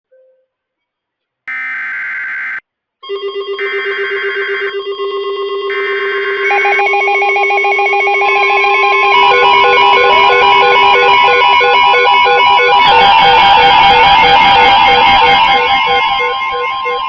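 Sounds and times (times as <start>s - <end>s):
data bursts: 1.5s - 2.6s, 3.6s - 4.7s, 5.7s - 6.8s
electronic synth tune: 1.5s - 2.6s, 3.6s - 4.7s, 5.7s - 6.9s.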